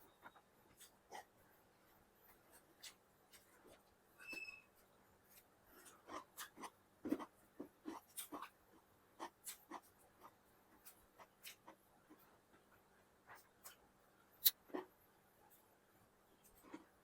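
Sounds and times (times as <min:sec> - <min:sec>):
person chewing food: 0:05.3 - 0:08.6, 0:09.2 - 0:12.4.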